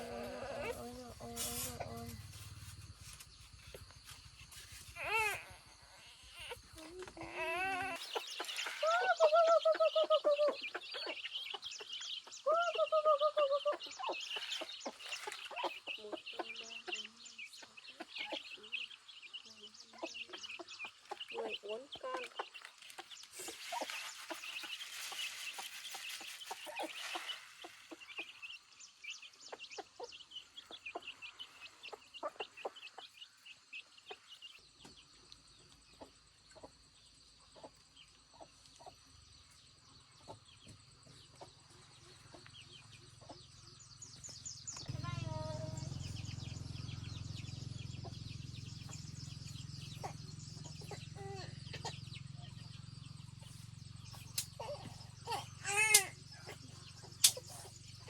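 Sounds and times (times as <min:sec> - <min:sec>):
chickens clucking and cheeping: 0:00.0 - 0:58.0
steady low hum: 0:41.8 - 0:55.6.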